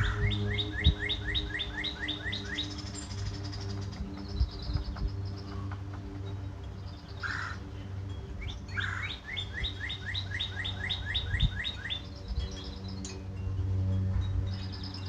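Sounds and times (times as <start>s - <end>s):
songbird whistled notes: 0.0s - 5.5s, 8.4s - 13.2s
harsh bird calls: 0.0s - 6.1s, 6.9s - 7.7s, 8.4s - 13.1s.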